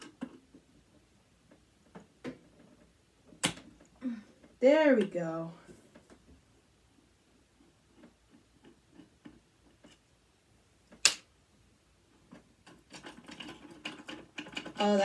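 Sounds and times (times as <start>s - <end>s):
sharp snap: 10.9s - 11.3s.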